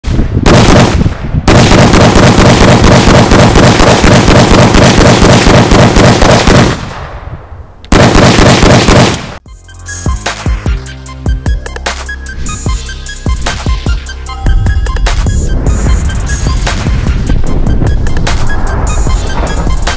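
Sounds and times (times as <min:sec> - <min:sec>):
rapid gunfire: 0:00.4 - 0:07.0, 0:07.9 - 0:09.4
music with a beat: 0:09.4 - 0:19.9.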